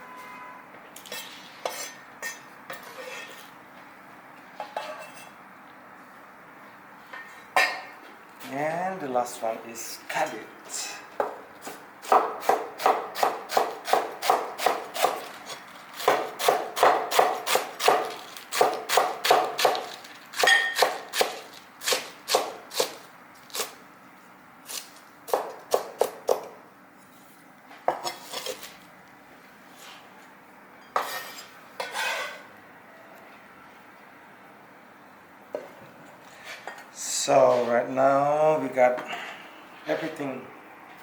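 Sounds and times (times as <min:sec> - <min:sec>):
knife chopping cabbage on board: 0:11.6 - 0:23.8, 0:24.7 - 0:26.6.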